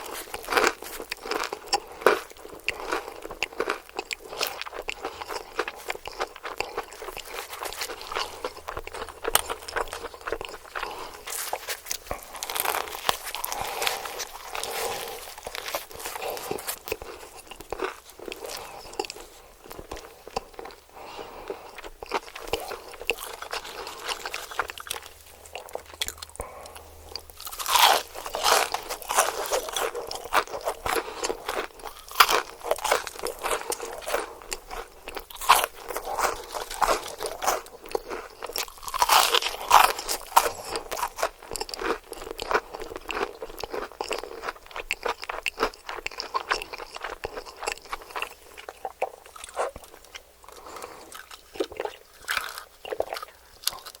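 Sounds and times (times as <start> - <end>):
crunching bites of fried chicken: 0.0 - 20.8, 21.5 - 54.0
soft chewing: 0.0 - 54.0.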